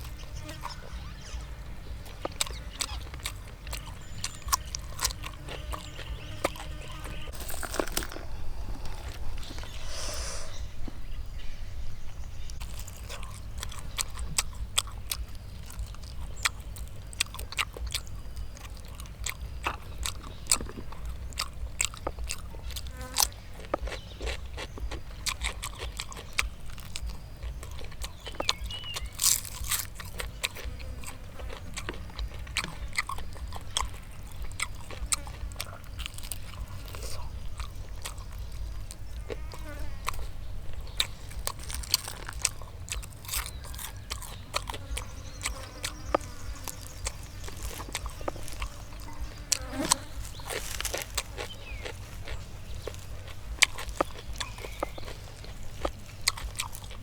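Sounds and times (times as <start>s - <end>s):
crunching and chewing fried chicken: 0.0s - 11.2s, 11.9s - 57.0s
low rumble: 7.3s - 12.9s.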